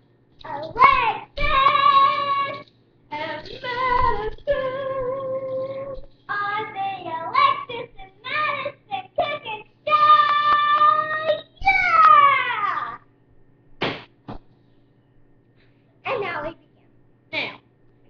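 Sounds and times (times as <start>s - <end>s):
child singing: 0.4s - 13.0s.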